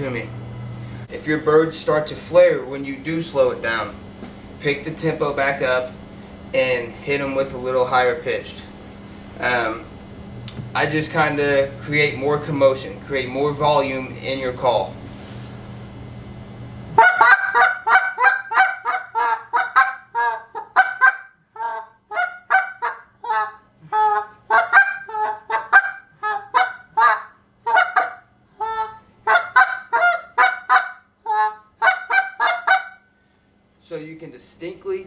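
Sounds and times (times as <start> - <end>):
goose call clucks and moans: 17.0 - 33.0.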